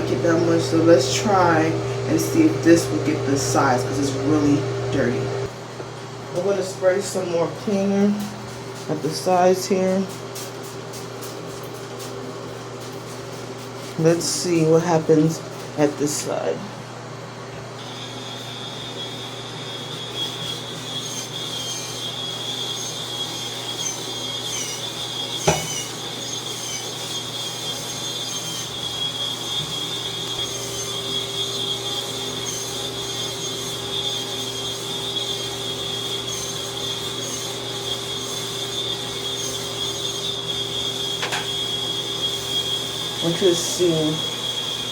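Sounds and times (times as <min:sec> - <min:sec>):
brush rubbing bathtub: 0:00.0 - 0:05.4
spin scrubber motor whine: 0:00.0 - 0:05.6, 0:17.8 - 0:44.9.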